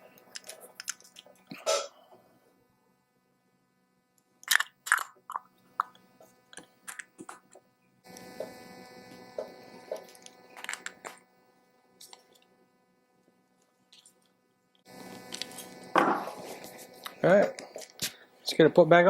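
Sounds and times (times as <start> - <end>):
steady hiss: 14.8 - 19.0.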